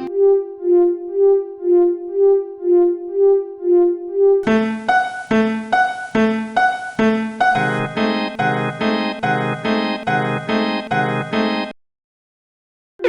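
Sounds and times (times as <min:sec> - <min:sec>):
synthesized bell-like tone: 0:00.0 - 0:00.2.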